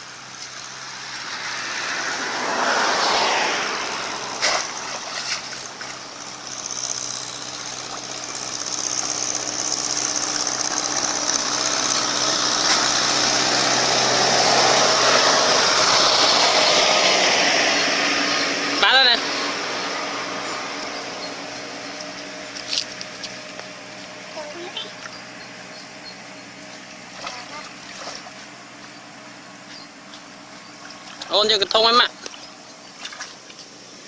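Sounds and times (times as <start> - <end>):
engine running: 0.0 - 34.0
loud rushing noise: 0.8 - 6.2, 10.2 - 22.5.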